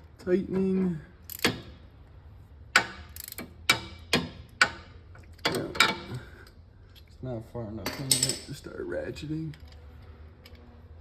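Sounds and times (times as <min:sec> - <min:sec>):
hand ratchet clicking: 0:01.3 - 0:01.7, 0:02.8 - 0:03.8.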